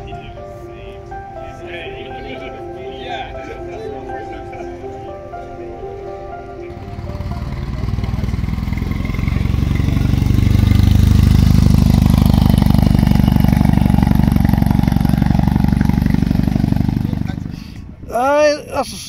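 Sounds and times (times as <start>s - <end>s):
car engine running: 6.4s - 17.6s.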